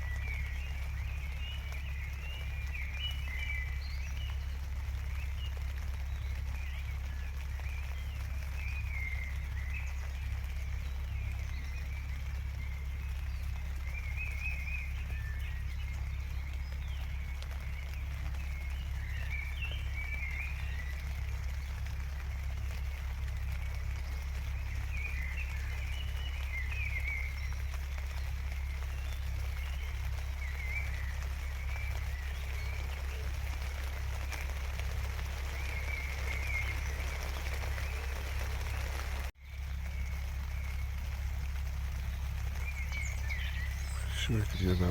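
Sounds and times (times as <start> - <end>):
birds singing: 0.0 - 44.9
faint warbling calls: 0.0 - 44.9
rain pattering: 0.0 - 44.9.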